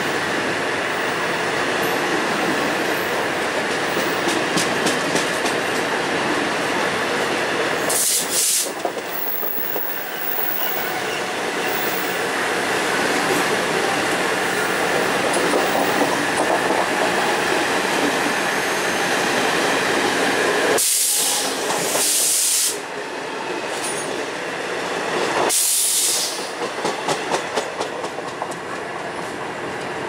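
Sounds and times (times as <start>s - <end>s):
train wheels rumbling on rails: 0.0s - 30.0s
high hiss bursts: 7.9s - 8.8s, 20.8s - 22.9s, 25.5s - 26.5s.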